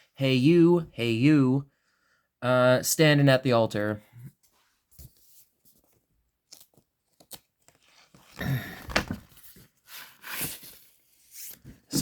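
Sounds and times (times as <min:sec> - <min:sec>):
paper and cardboard rustling: 0:04.5 - 0:12.0.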